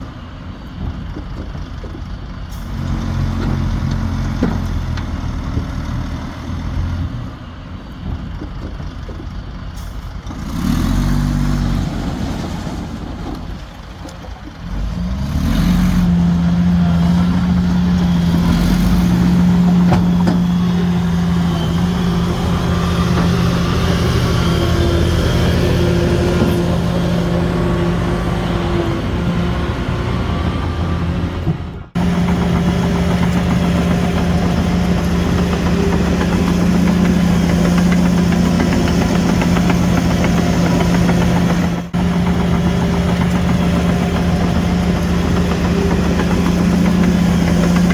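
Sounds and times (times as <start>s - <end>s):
heavy diesel engines running: 0.0s - 47.9s
engine revving: 10.3s - 12.7s, 14.6s - 47.9s.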